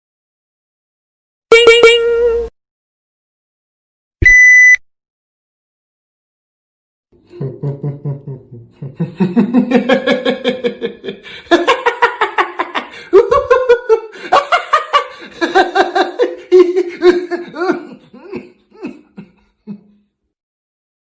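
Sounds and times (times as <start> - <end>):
person laughing loudly: 7.3 - 20.0.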